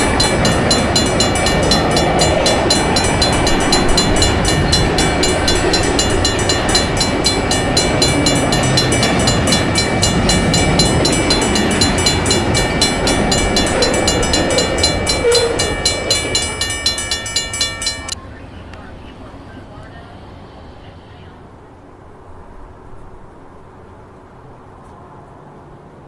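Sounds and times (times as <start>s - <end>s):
railroad crossing bells ringing: 0.0s - 20.2s
low rumble of passing train: 0.0s - 26.0s.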